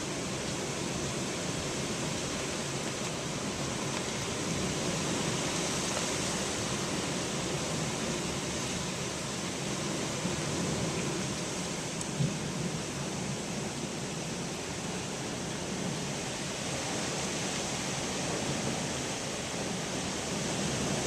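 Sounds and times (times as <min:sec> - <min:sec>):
hurricane wind rushing: 0:00.0 - 0:21.0.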